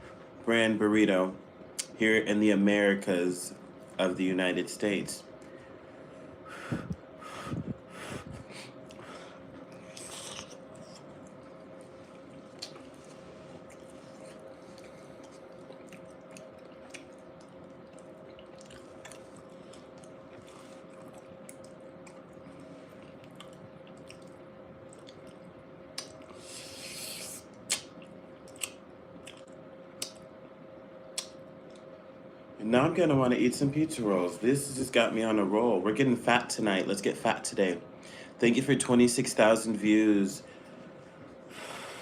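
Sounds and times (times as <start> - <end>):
faint steady hum: 0.0 - 42.0
person chewing food: 8.8 - 30.2
wet mouth sounds with clicks: 12.5 - 12.9, 26.0 - 26.3, 27.7 - 30.3, 31.1 - 31.9.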